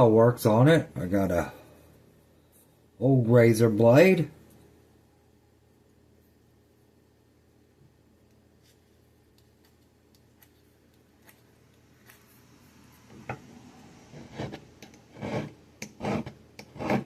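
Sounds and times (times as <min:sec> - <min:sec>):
metal file scraping razor blade: 0:14.2 - 0:17.0.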